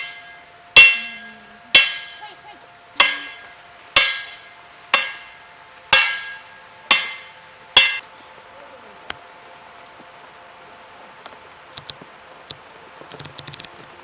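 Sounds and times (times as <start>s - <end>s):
sharp ringing metal strikes: 0.0s - 2.4s, 3.0s - 8.0s.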